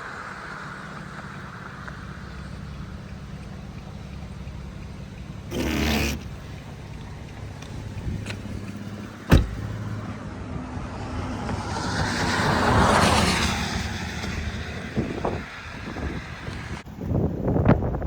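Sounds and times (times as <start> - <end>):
car engine and road hum: 0.0 - 18.0.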